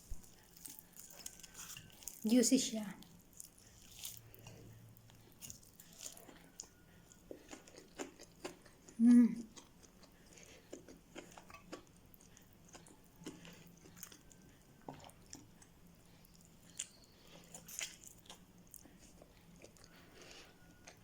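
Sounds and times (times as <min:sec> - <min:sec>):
chewing fried chicken: 0:00.0 - 0:21.0.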